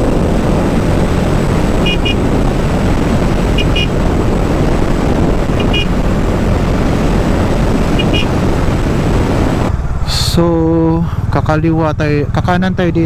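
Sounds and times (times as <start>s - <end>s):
wind rushing over microphone: 0.0s - 10.2s
motorcycle engine running: 0.0s - 13.0s.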